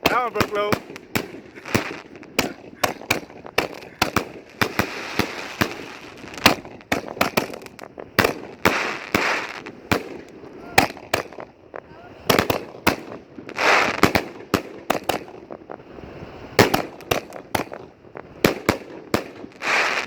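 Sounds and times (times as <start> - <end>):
steady hissing: 0.0 - 9.8
firework shells bursting: 0.0 - 20.0.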